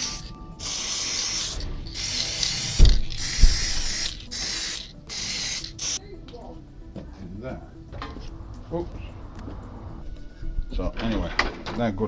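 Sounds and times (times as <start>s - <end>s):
aerosol spray hissing: 0.0s - 12.0s.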